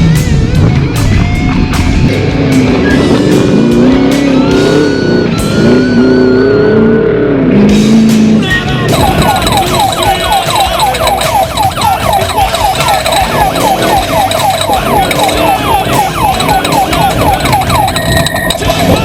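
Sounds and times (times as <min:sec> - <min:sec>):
electronic siren yelping: 0:04.4 - 0:07.0, 0:08.9 - 0:19.0
truck engine running: 0:08.9 - 0:19.0.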